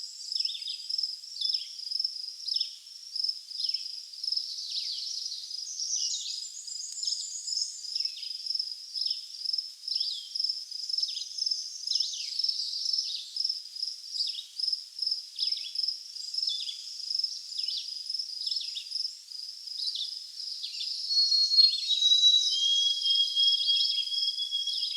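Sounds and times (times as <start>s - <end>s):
sparrow whistled song: 4.5s - 8.3s, 19.8s - 24.9s
songbird high slurred call: 20.7s - 24.9s.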